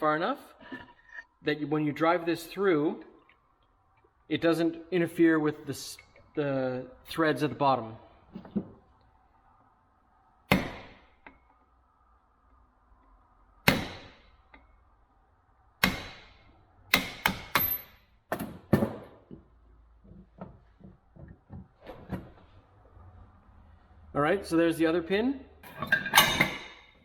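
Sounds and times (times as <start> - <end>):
hammer striking metal: 10.5 - 11.0, 13.6 - 14.2, 15.8 - 18.0.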